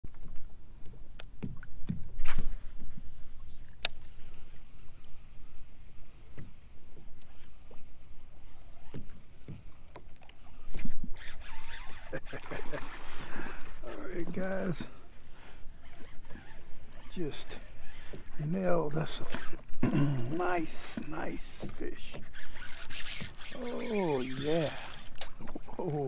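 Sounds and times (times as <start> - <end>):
sharp click: 3.8 - 4.0.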